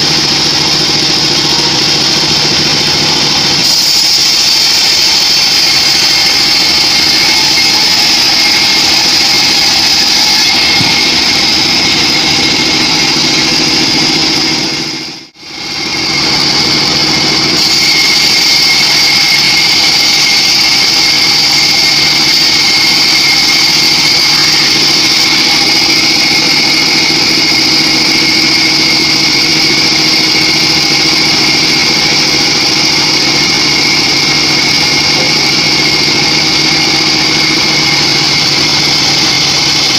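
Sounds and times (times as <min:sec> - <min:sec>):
band saw blade whining: 0:00.0 - 0:39.9
drive motor running: 0:15.8 - 0:39.9.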